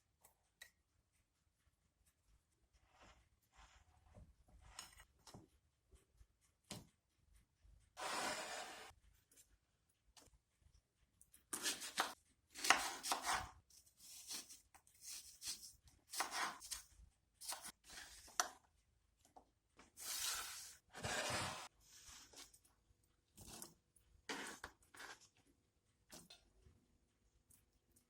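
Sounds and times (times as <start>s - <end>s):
knife chopping on cutting board: 11.5s - 13.6s, 14.2s - 16.8s.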